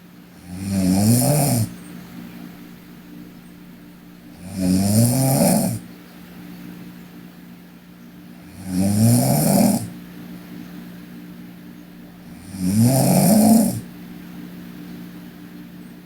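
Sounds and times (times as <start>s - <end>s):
girl snoring: 0.4s - 1.8s, 4.2s - 5.8s, 8.5s - 9.9s, 12.1s - 13.9s.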